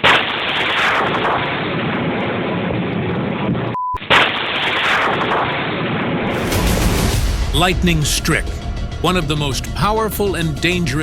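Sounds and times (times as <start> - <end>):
loud thunderclap: 6.2 - 10.7
thunder rolling: 6.2 - 11.0.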